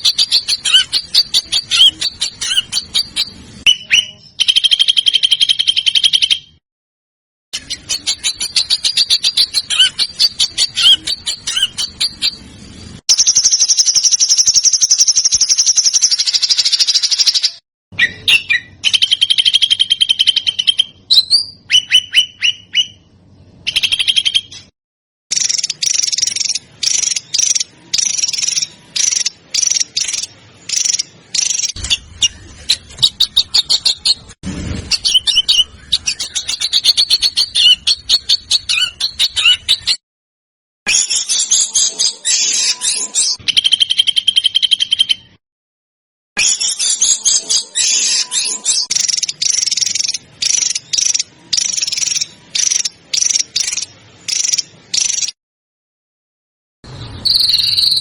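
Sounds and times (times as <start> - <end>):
songbird whistles: 0.0 - 6.6, 13.1 - 24.7, 34.9 - 40.0, 57.1 - 58.0.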